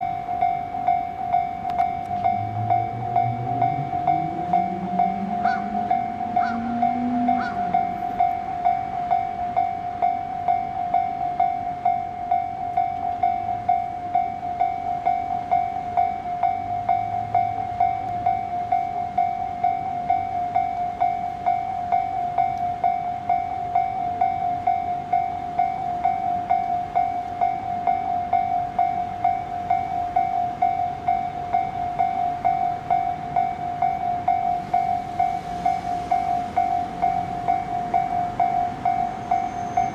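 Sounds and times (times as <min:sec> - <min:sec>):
level-crossing warning bell: 0:00.0 - 0:39.9.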